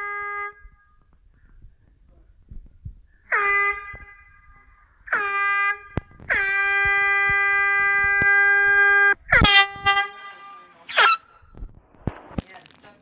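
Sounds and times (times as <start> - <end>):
air horn blasts: 0.0 - 1.0, 3.3 - 11.5.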